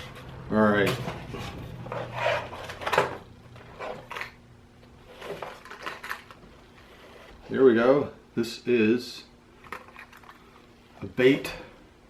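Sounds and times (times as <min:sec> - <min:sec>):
packaging rustling and scraping: 0:01.1 - 0:04.4, 0:05.0 - 0:07.4.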